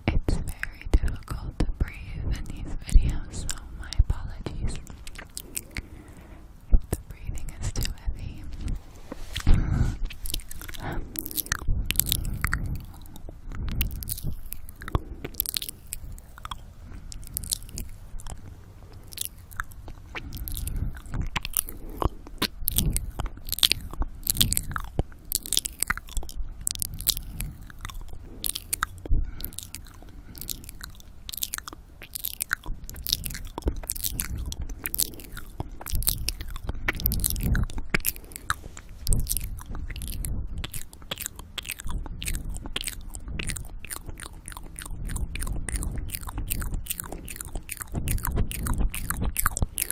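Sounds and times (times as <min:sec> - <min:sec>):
wet mouth clicks and smacks: 0:00.0 - 0:49.9
heavy breathing on microphone: 0:02.0 - 0:31.6.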